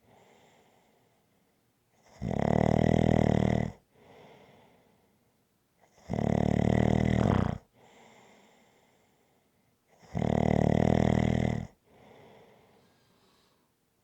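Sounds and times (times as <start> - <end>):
faint breath: 0.0 - 1.6, 3.9 - 5.3, 7.2 - 9.8, 11.8 - 13.8
person snoring: 6.1 - 7.6, 10.1 - 11.8.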